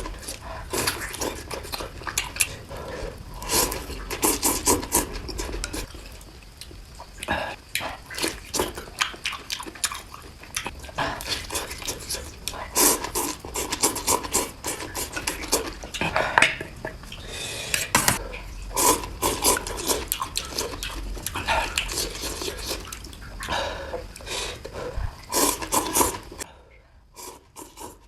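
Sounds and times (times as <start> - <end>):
close-up eating noises: 0.0 - 28.0.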